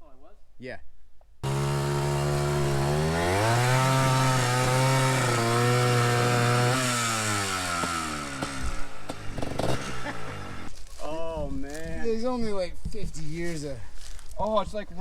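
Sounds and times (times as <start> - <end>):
two-stroke engine revving: 1.4 - 10.7.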